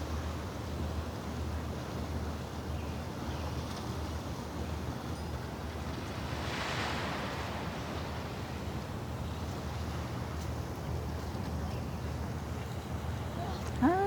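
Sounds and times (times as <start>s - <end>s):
wind rumble on microphone: 0.0s - 14.0s
sea waves washing in: 4.0s - 14.0s.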